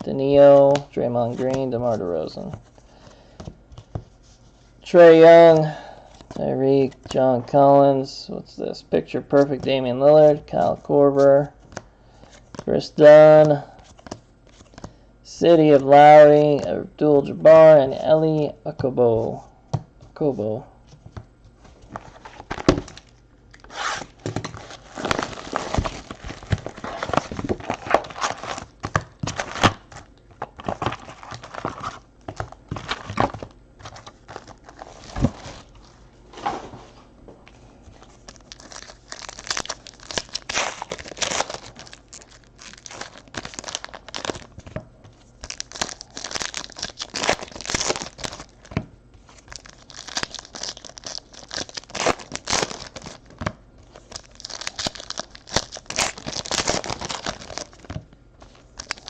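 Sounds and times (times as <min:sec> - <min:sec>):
foil packs tearing and crinkling: 0:22.2 - 0:29.9, 0:38.3 - 0:44.6, 0:45.4 - 0:48.8, 0:49.4 - 0:58.0, 0:58.8 - 0:59.0.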